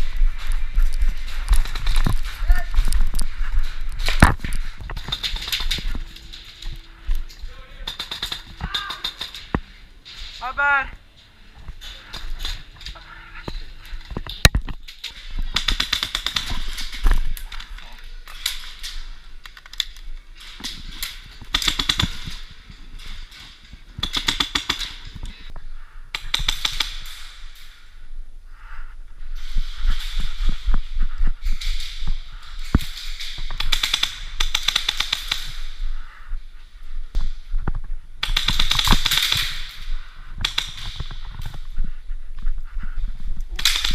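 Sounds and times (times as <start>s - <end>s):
airsoft guns firing bursts: 7.8s - 9.5s, 15.4s - 17.0s, 24.0s - 25.1s.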